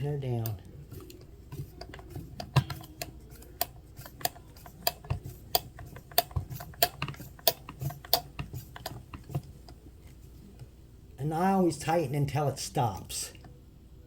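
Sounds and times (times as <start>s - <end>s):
metal tool clicking on metal: 0.4s - 9.4s.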